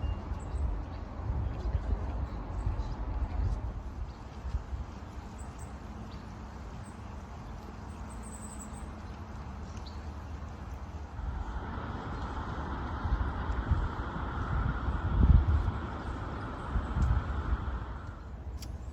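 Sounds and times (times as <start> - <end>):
wind rumble on microphone: 0.0 - 18.9
steady hiss: 9.5 - 18.9.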